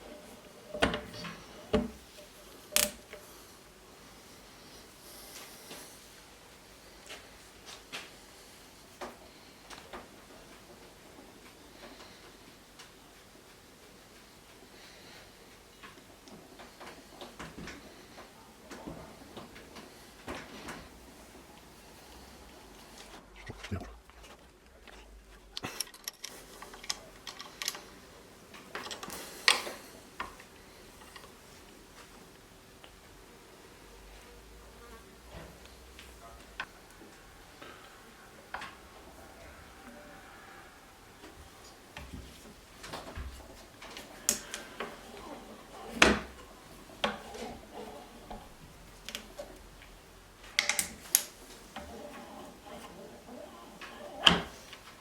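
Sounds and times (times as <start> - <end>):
sharp clicks and light knocks: 0.0 - 3.4, 42.0 - 53.0.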